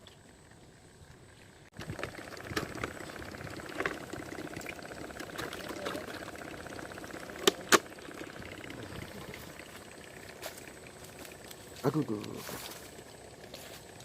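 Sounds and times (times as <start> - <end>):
water bubbling and splashing: 1.7 - 11.7.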